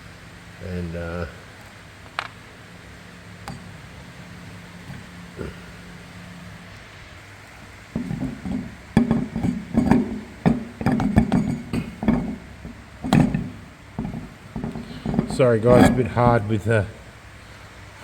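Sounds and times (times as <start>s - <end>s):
metal clanks and knocks: 3.4s - 3.9s, 4.8s - 5.7s, 7.6s - 16.6s.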